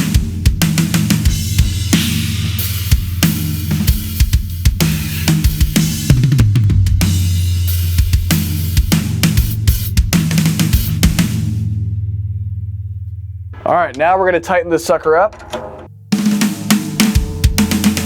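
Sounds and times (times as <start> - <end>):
low-tuned snare drum: 0.0 - 11.7, 13.6 - 18.0
cymbals: 13.6 - 18.0.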